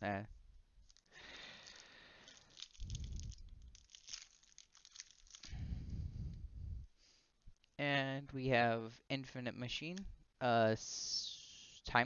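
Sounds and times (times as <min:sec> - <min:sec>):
hands handling cards: 0:00.8 - 0:05.5
foil wrapper crinkling and tearing: 0:00.8 - 0:05.6.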